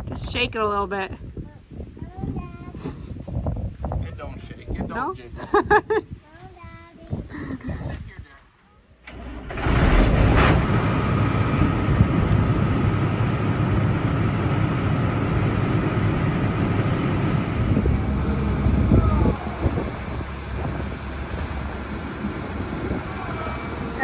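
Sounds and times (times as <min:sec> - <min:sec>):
diesel engine running: 0:09.1 - 0:24.0.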